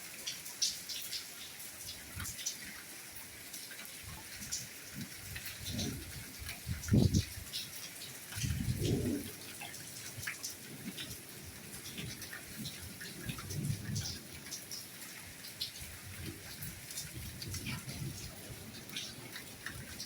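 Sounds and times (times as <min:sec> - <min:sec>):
raindrops ticking: 0:00.0 - 0:20.0
rain hissing: 0:03.4 - 0:20.0.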